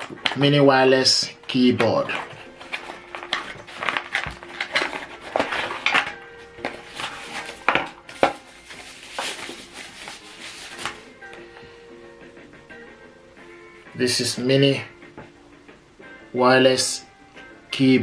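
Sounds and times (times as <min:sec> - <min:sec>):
faint background music: 0:00.0 - 0:18.0
plastic keyboard and packaging clatter: 0:01.6 - 0:11.0.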